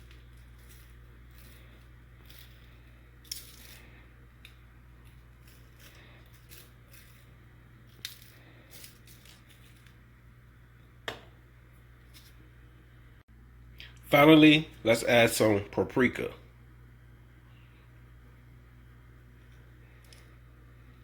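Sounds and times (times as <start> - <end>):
spice shaker rattling: 0.0 - 10.1
steady low hum: 0.0 - 21.0.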